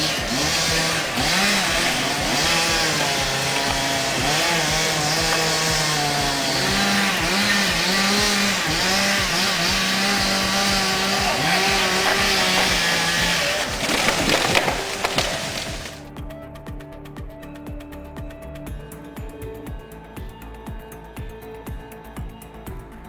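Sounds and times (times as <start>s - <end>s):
chainsaw engine revving: 0.0s - 16.1s.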